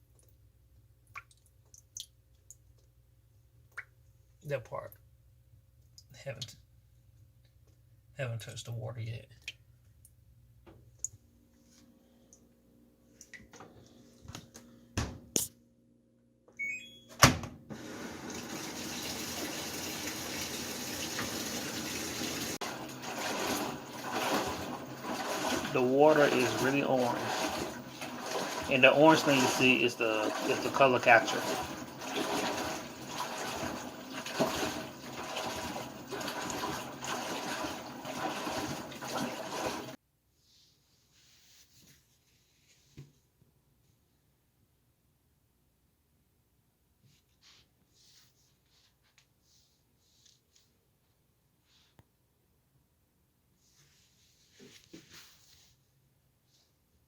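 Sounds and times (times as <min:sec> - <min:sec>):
water pouring into drum: 0:17.7 - 0:40.0.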